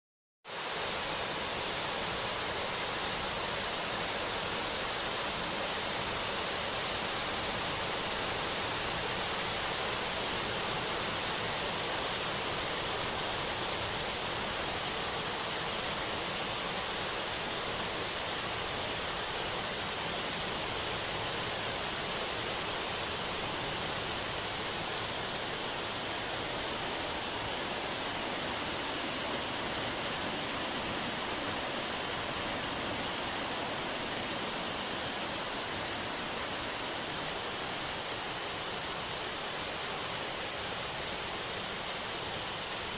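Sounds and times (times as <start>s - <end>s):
heavy rain falling: 21.8s - 37.8s.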